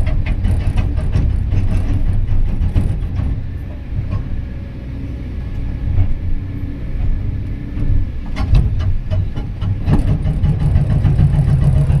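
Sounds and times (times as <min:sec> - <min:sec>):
diesel engine running: 0:00.0 - 0:12.0
metal knocks and clanks: 0:07.8 - 0:12.0.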